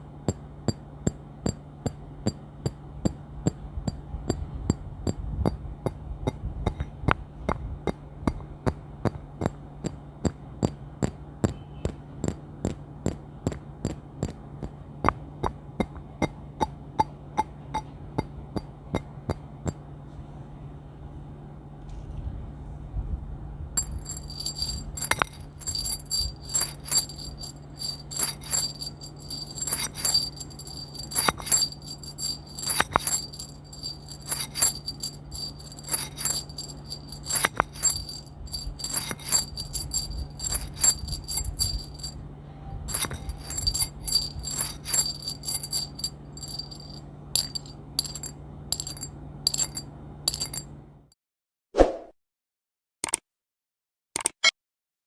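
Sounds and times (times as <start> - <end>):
high jingling ring: 23.8 - 42.2, 42.9 - 50.7.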